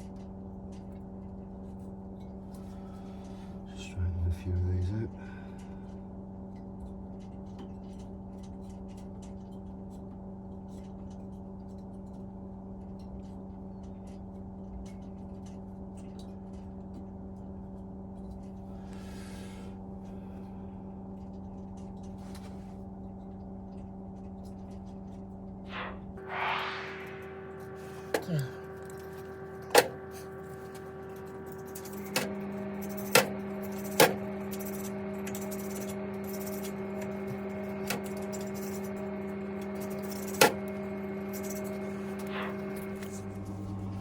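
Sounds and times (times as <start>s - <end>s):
low electrical hum: 0.0s - 44.0s
metal scrape: 25.7s - 44.0s.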